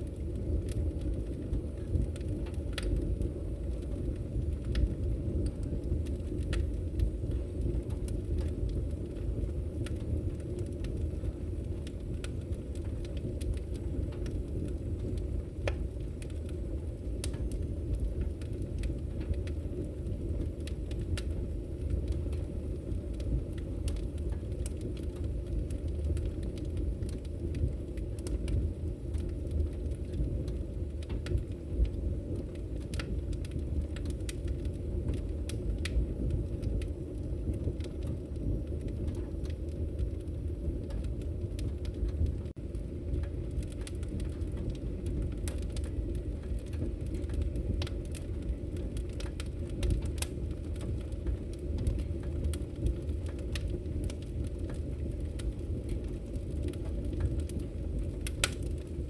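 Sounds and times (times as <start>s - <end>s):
campfire crackling: 0.0s - 59.0s.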